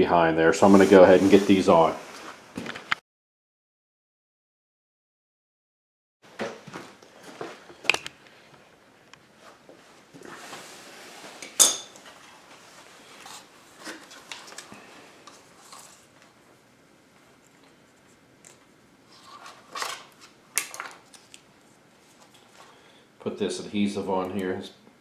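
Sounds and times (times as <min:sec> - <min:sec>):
soft handling noise: 0:06.4 - 0:16.5, 0:17.1 - 0:22.8.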